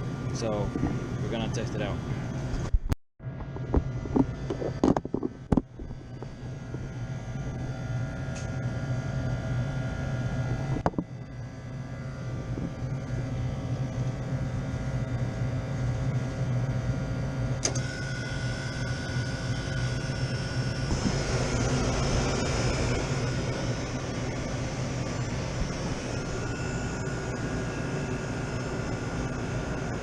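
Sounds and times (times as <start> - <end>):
refrigeration unit humming: 0.0 - 30.0
steady higher tone: 17.8 - 30.0.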